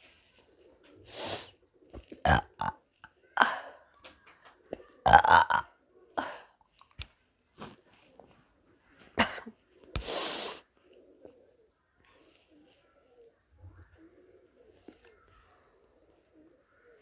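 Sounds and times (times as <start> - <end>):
woman burping: 2.2 - 2.8, 5.1 - 6.5.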